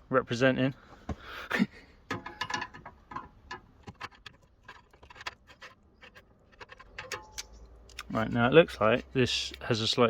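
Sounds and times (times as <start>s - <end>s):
hand tools tapping metal: 2.1s - 8.3s.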